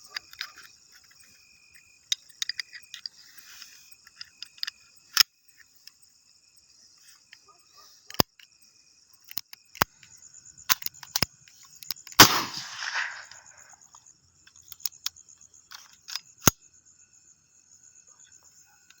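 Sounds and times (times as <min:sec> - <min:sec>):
insects chirping: 0:00.0 - 0:19.0
sharp clicks: 0:11.9 - 0:13.8
pistol shot: 0:12.2 - 0:13.7.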